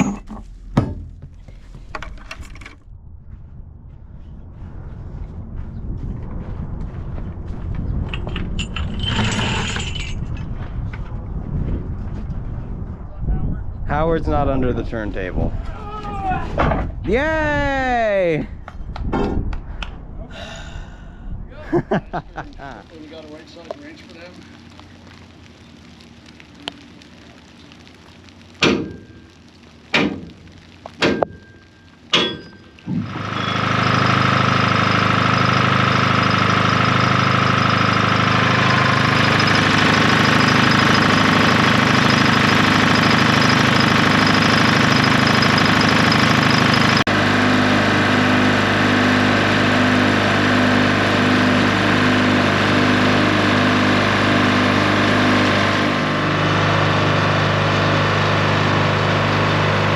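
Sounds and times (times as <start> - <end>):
sharp knocks: 29.9 - 30.3
engine running loudly: 33.0 - 59.9.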